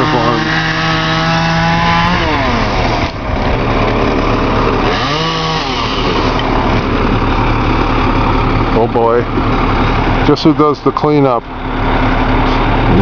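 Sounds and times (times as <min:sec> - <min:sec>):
chainsaw engine revving: 0:00.0 - 0:08.8, 0:11.8 - 0:13.0
loud machinery noise: 0:00.0 - 0:13.0.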